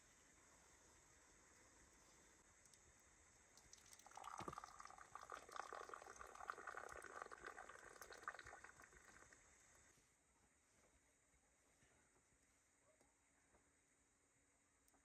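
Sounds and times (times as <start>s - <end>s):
crackle of small pops: 2.6s - 5.7s
liquid bubbling: 3.6s - 9.9s.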